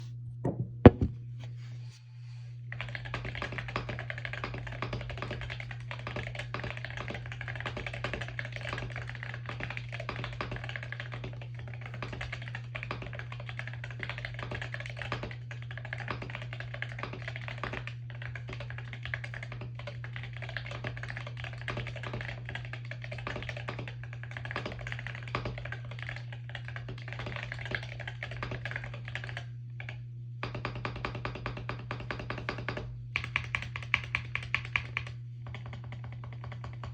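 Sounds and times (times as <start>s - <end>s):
steady low hum: 0.0s - 36.9s
sharp knocks: 0.4s - 1.2s
fast keyboard typing: 2.7s - 36.9s.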